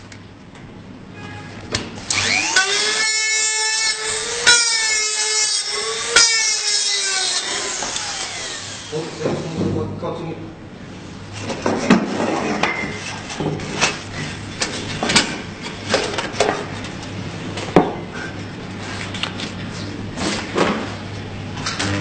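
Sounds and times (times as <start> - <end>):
steady machine hum: 2.1 - 9.5, 21.2 - 22.0.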